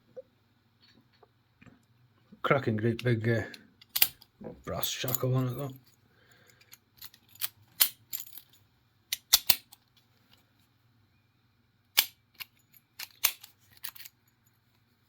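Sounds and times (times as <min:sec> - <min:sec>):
faint steady hum: 0:00.0 - 0:15.0
metallic padlock clicks and knocks: 0:03.8 - 0:04.3, 0:09.1 - 0:09.8, 0:12.0 - 0:14.2.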